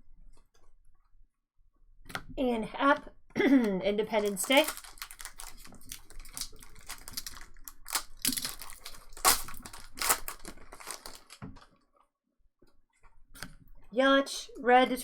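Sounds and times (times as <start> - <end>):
cards and packaging handled: 4.2 - 11.7.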